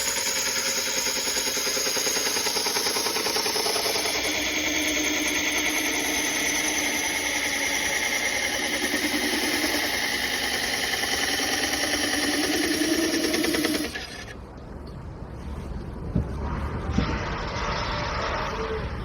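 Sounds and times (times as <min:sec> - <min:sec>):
motor running with fast pulse: 0:00.0 - 0:14.4.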